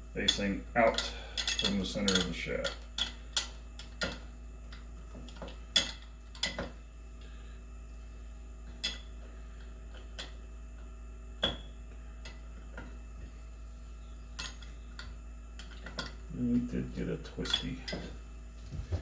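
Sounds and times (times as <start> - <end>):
steady low hum: 0.0 - 19.0
metal tools clicking: 0.2 - 4.8, 17.4 - 18.1.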